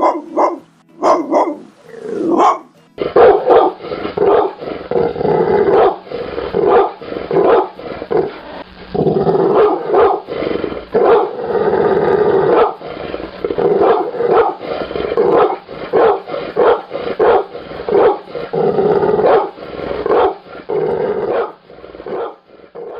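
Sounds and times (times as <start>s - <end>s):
dog barking: 0.0s - 4.6s, 5.7s - 7.8s, 9.5s - 10.3s, 10.9s - 11.4s, 12.4s - 12.8s, 13.8s - 18.3s, 19.2s - 20.4s, 21.2s - 22.9s
drawn-out dog sounds: 0.0s - 8.7s, 9.5s - 11.4s, 12.4s - 22.9s.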